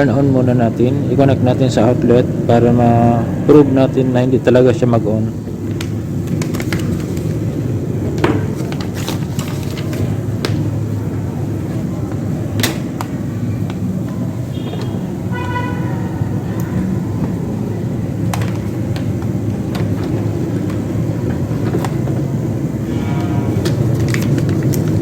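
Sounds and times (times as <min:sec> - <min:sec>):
vehicle traffic rumble: 0:00.0 - 0:25.0.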